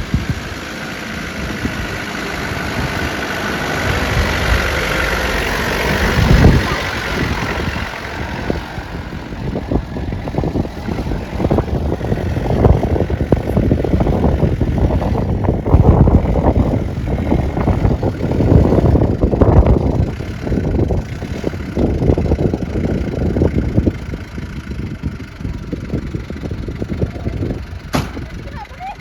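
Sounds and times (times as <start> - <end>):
off-road vehicle engine rumbling: 0.0 - 29.0
vehicle jolts and knocks: 27.9 - 28.4.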